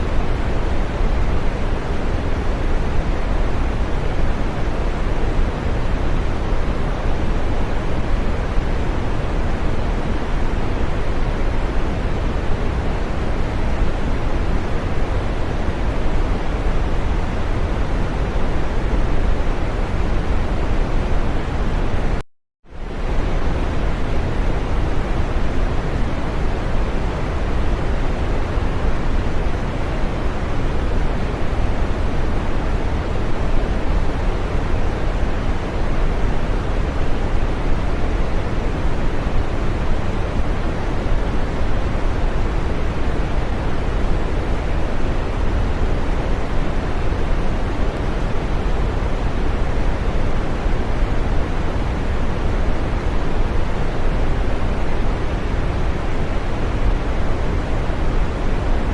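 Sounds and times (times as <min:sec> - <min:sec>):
steady rushing noise: 0:00.0 - 0:58.9.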